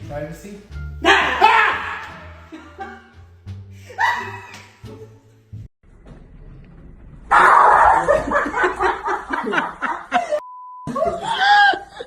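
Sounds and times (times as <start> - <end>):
laughter: 2.5 - 3.1, 8.0 - 12.0
censor bleep: 10.4 - 10.9.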